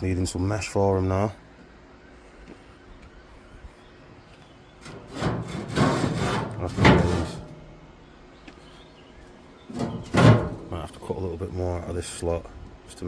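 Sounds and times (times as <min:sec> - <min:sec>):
metal scraping against steel: 0:04.8 - 0:08.0, 0:09.7 - 0:11.1.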